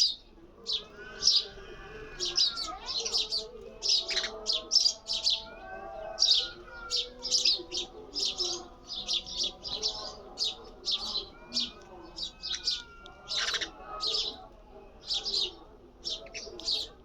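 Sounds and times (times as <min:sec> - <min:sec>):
sparrow chirping: 0:00.0 - 0:17.0.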